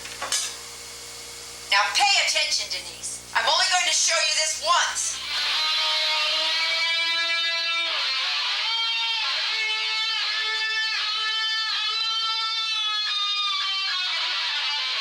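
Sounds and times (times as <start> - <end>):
electric guitar slow melody: 5.2 - 15.0.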